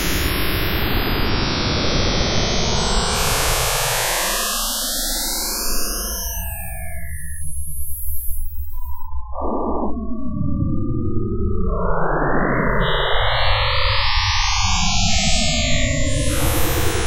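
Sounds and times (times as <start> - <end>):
electronic tones gliding: 3.9 - 9.1.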